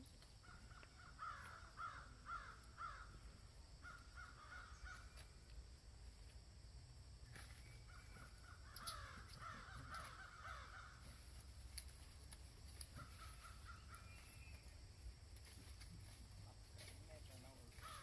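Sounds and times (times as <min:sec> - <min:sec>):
faint harsh animal calls: 0:00.4 - 0:05.4, 0:07.6 - 0:11.6, 0:12.8 - 0:15.0, 0:17.7 - 0:18.0.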